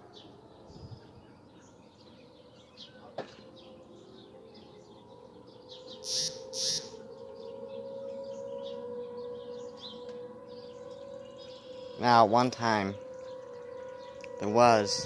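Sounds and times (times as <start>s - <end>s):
birds chirping: 0.0s - 15.0s
distant warning siren wailing: 0.0s - 15.0s.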